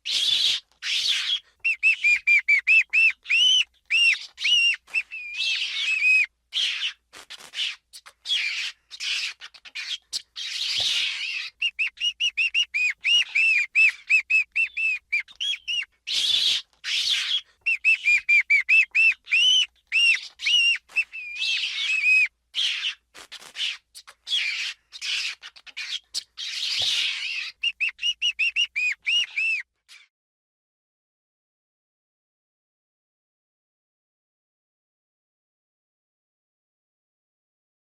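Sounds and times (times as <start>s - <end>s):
ferret squeaking: 0.1s - 7.0s, 7.6s - 23.0s.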